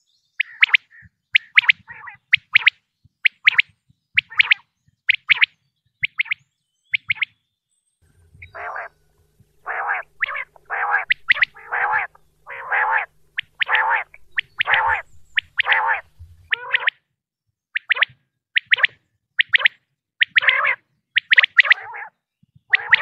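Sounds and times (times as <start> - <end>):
quail calling: 0.4 - 7.4, 8.3 - 17.0, 17.8 - 23.0
low hum: 8.0 - 16.6.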